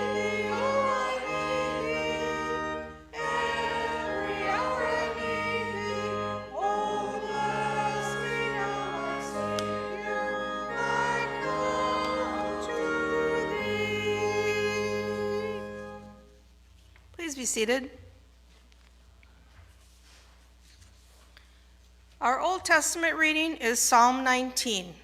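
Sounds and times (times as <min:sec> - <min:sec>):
congregation singing a hymn: 0:00.0 - 0:16.3
instrumental accompaniment: 0:00.0 - 0:16.4.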